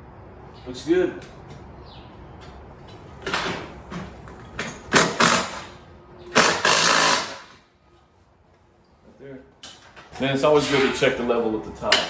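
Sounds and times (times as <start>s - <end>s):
power driver driving screws: 4.9s - 7.6s.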